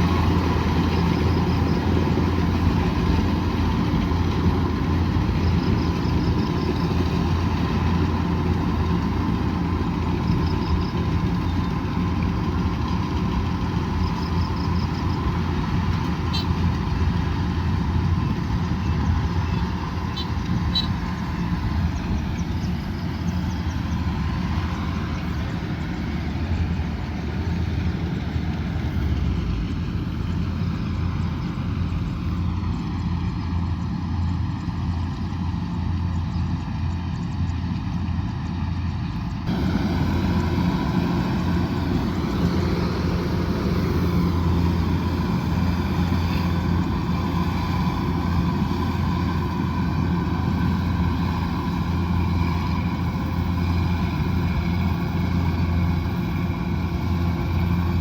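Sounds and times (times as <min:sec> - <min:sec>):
combine harvester engine drone: 0:00.0 - 0:58.0
faint steady whine: 0:39.3 - 0:58.0.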